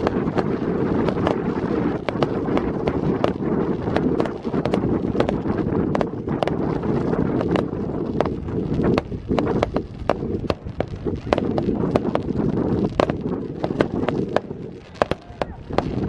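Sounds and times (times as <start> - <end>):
fireworks bangs and crackles: 0.0 - 16.0
low rumble: 0.0 - 16.0.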